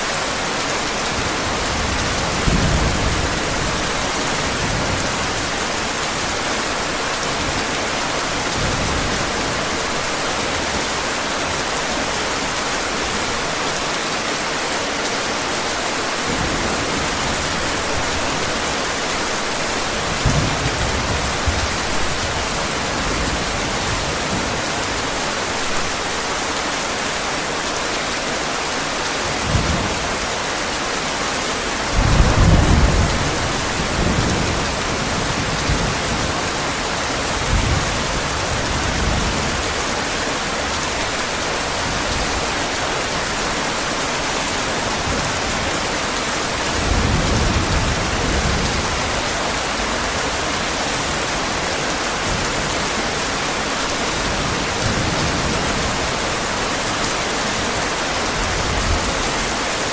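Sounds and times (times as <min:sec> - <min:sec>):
heavy rain: 0:00.0 - 0:59.9
thunder rumbling: 0:31.8 - 0:36.6.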